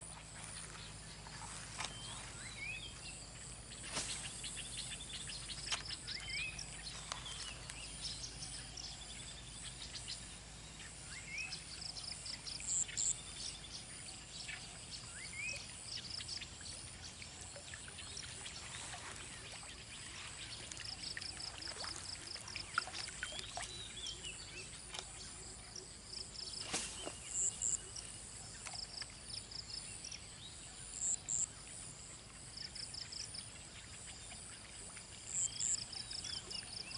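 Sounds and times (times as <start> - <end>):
birds chirping: 0.0 - 16.8.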